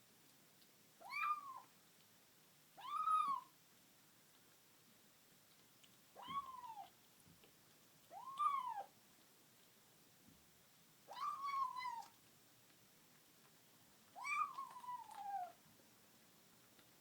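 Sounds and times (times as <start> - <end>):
cat meowing while eating: 1.0 - 1.8, 2.7 - 3.6, 6.2 - 7.0, 8.0 - 9.0, 11.1 - 12.2, 14.1 - 15.6.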